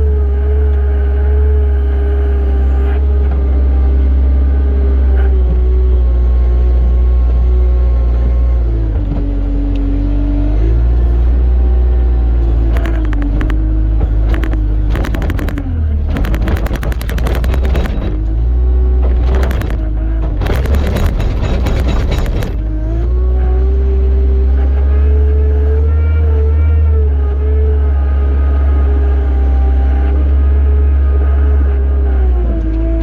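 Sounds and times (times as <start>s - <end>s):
tractor engine running: 0.0s - 26.1s
rapid clattering: 12.8s - 22.7s.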